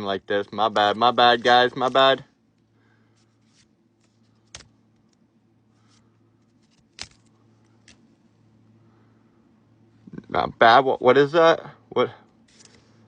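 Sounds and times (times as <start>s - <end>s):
cards and wrapper rustling: 5.8s - 8.0s.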